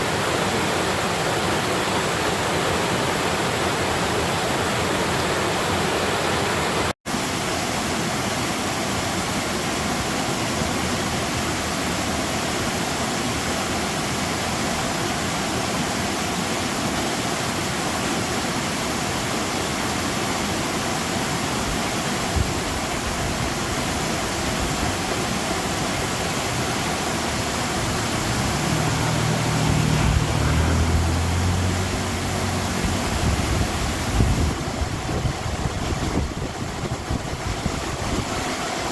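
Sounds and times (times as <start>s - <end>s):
water rushing in a stream: 0.0s - 38.9s
low rumbling: 27.6s - 36.3s.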